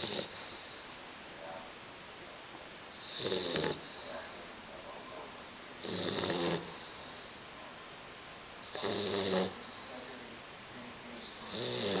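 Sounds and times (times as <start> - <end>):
puppy snoring: 0.0 - 0.8, 2.9 - 4.3, 5.8 - 7.2, 8.6 - 10.0, 11.2 - 12.0.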